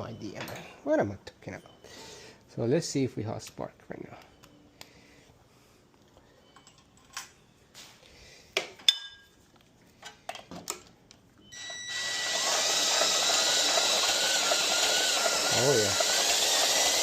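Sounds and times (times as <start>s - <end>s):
mower engine cranking: 11.9s - 17.0s.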